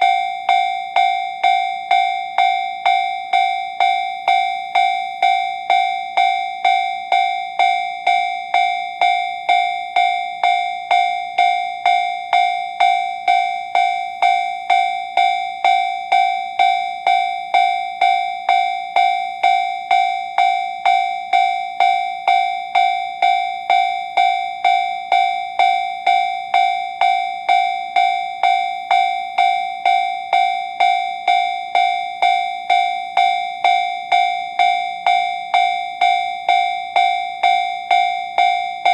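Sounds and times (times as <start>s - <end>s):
railway crossing warning bell: 0.0s - 38.9s.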